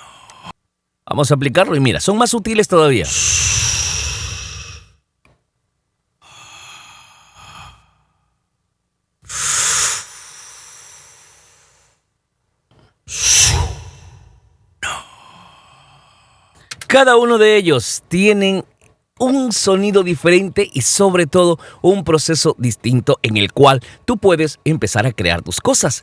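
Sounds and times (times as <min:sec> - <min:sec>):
breathy whoosh: 0:03.0 - 0:05.0, 0:13.1 - 0:14.6.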